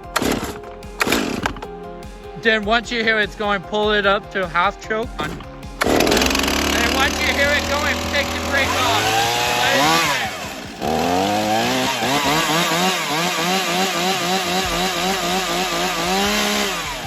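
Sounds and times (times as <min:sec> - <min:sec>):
chainsaw revving: 0:00.0 - 0:01.7, 0:05.2 - 0:17.0.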